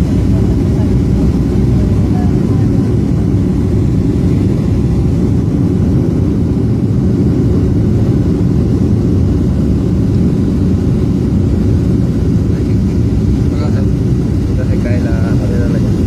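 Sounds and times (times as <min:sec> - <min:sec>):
airplane cabin engine drone: 0:00.0 - 0:16.0.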